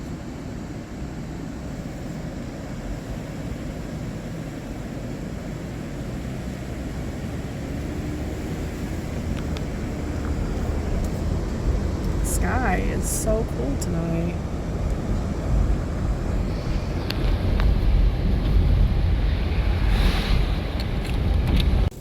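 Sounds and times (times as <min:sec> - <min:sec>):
car cabin road and engine rumble: 0:00.0 - 0:22.0.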